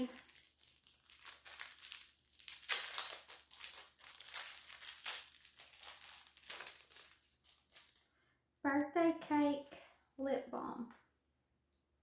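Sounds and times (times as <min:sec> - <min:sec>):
bubble wrap crinkling: 0:00.0 - 0:08.2.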